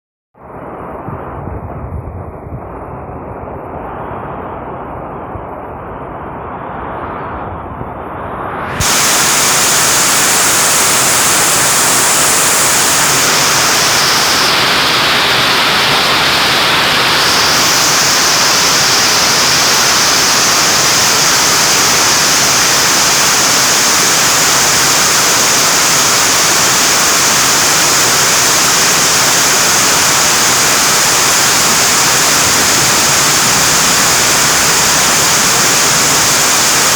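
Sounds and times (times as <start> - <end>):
heavy rain hiss: 8.8 - 36.9.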